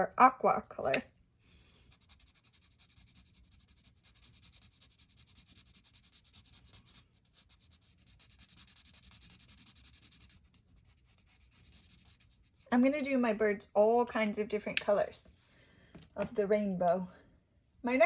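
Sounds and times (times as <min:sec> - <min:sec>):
marker scratching on paper: 0:01.8 - 0:12.8.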